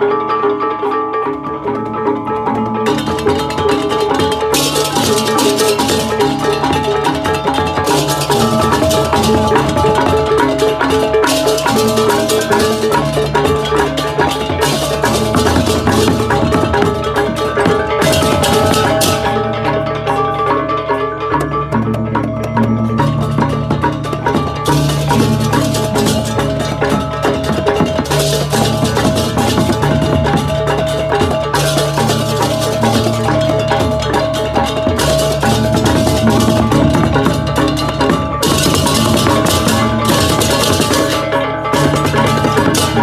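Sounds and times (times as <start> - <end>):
gamelan music: 0.0 - 43.0.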